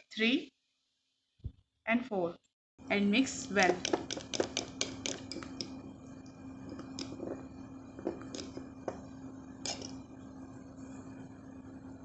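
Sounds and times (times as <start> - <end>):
spoon stirring sticky paste: 3.6 - 10.1
spoon clicking against bowl: 3.8 - 5.8.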